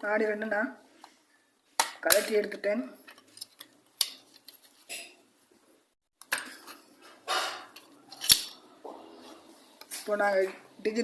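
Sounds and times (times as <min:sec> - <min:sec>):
plastic parts scraping and rattling: 0:02.1 - 0:05.1, 0:06.2 - 0:08.6.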